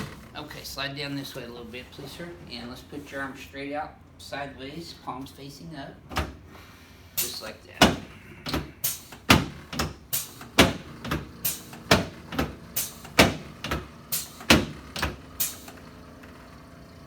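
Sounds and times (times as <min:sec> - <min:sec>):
sharp knocks: 0:07.2 - 0:15.2.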